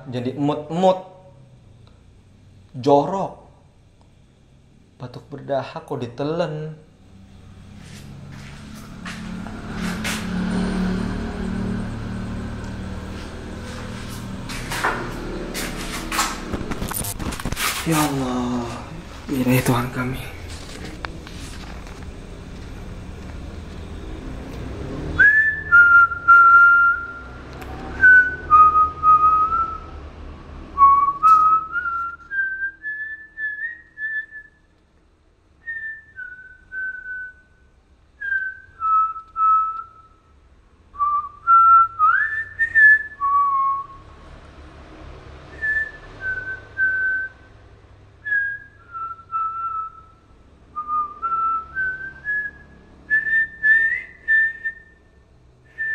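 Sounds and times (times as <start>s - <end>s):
person whistling a slow melody: 25.2s - 30.0s, 30.8s - 34.7s, 35.6s - 37.6s, 38.2s - 40.2s, 41.0s - 44.0s, 45.5s - 47.5s, 48.2s - 55.0s.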